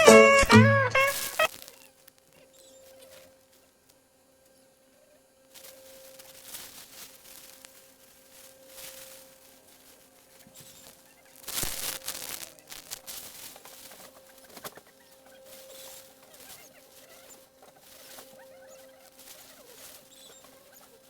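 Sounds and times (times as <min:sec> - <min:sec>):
rustling: 0:00.0 - 0:04.6, 0:05.4 - 0:21.0
newborn kittens squeaking: 0:13.6 - 0:21.0.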